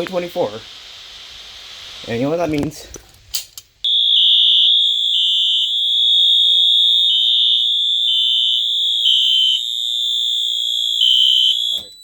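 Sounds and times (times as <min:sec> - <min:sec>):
steady high alarm tone: 0:03.8 - 0:12.0
pulsing lower alarm tone: 0:03.9 - 0:12.0.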